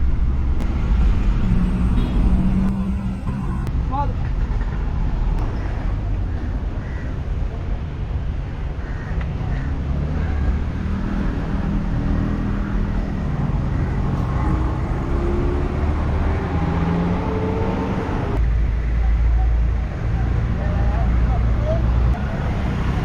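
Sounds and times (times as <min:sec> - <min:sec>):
motor engine running: 0:00.6 - 0:03.7.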